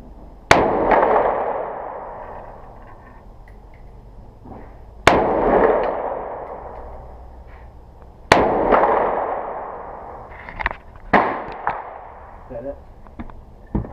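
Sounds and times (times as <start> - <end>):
rifle shots with echo: 0.5 - 2.3, 5.0 - 7.0, 8.3 - 10.2, 11.1 - 12.3.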